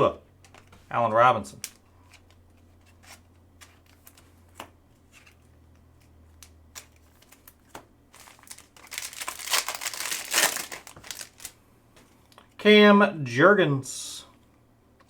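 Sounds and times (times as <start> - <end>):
plastic wrapper crinkling: 6.8 - 11.6.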